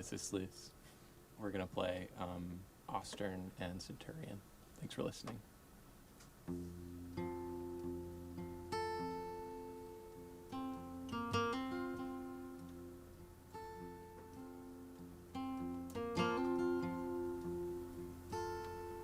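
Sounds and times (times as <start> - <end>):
plucked acoustic guitar: 6.4 - 19.0.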